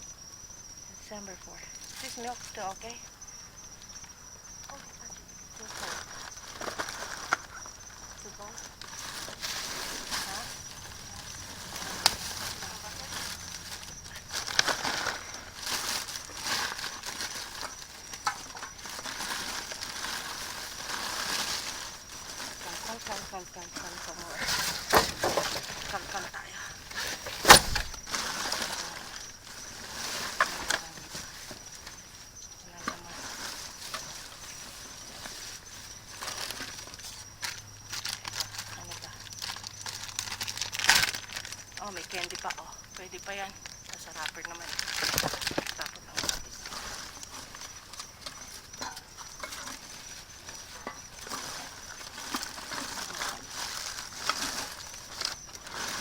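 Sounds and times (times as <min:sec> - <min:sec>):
plastic bags rustling: 0:01.0 - 0:56.0
knocks of items being moved: 0:05.8 - 0:32.2, 0:44.8 - 0:56.0.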